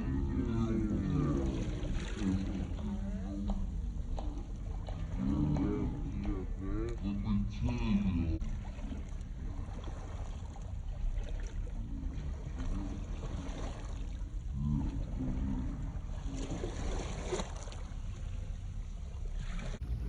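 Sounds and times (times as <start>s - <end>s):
water at the shore: 0.0s - 20.0s
wind rumbling on microphone: 19.3s - 20.0s.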